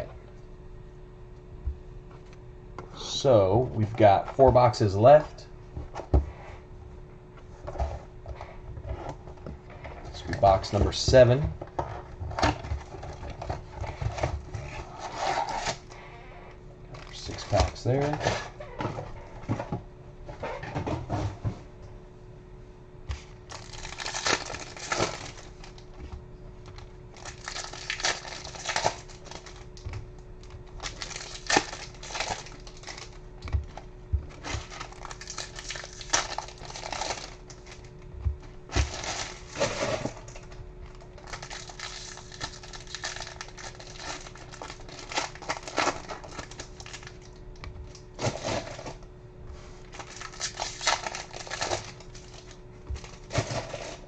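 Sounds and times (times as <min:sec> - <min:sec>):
faint steady hum: 0:00.0 - 0:54.0
foil wrappers crinkling: 0:17.0 - 0:18.8, 0:23.2 - 0:26.0, 0:26.6 - 0:49.1, 0:49.8 - 0:54.0.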